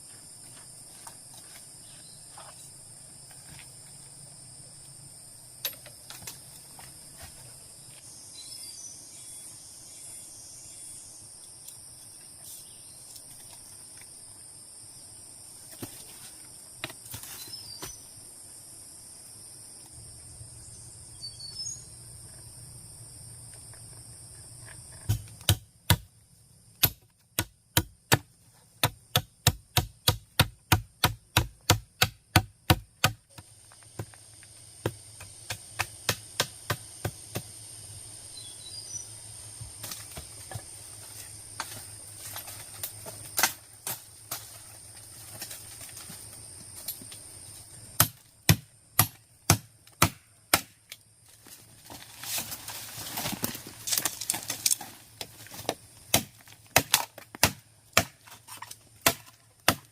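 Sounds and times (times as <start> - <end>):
high-pitched insect chorus: 0.0 - 59.9
sharp evenly spaced knocks: 26.8 - 34.2, 34.8 - 37.5.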